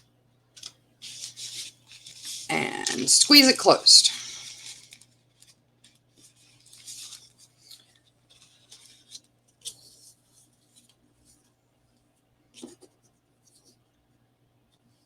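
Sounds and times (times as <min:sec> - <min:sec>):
paper rustling and tapping: 0:04.6 - 0:11.4, 0:12.5 - 0:13.6.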